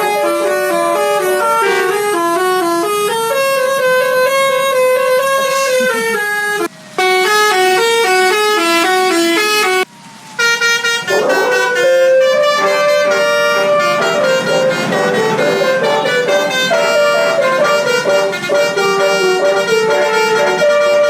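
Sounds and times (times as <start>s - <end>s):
multi-tone bus air horn melody: 0.0s - 21.0s
rushing noise: 10.2s - 21.0s.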